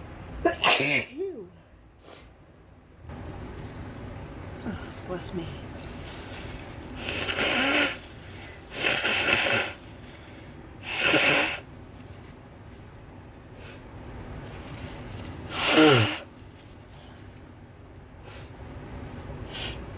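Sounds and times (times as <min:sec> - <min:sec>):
woman sneezing: 0:00.4 - 0:01.5, 0:15.5 - 0:16.3.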